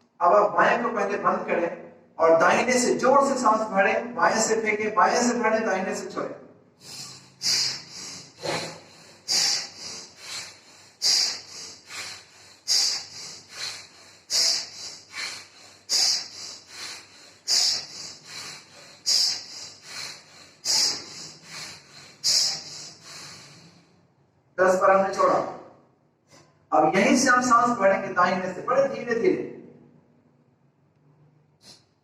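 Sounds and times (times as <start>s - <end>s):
forceful breathing through the nose: 6.8s - 24.0s.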